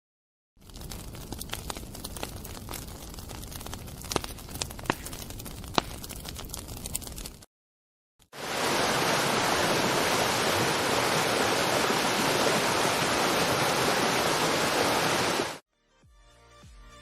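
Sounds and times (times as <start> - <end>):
rain downpour: 8.3 - 15.6.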